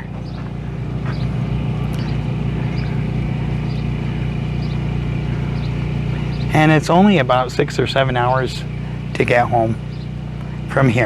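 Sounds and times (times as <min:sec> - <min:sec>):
low engine drone: 0:00.0 - 0:11.0.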